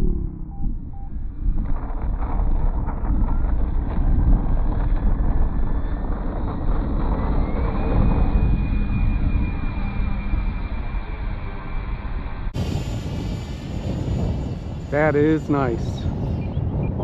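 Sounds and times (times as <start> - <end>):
wind rumble on microphone: 0.0 - 17.0
model jet fan whine: 4.9 - 17.0.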